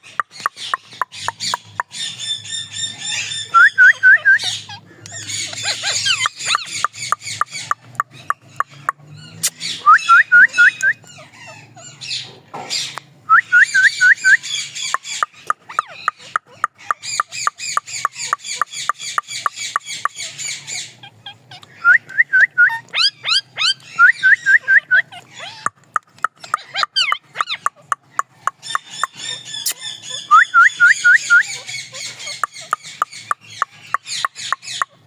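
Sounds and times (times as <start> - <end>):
parrots calling: 0.0 - 35.0.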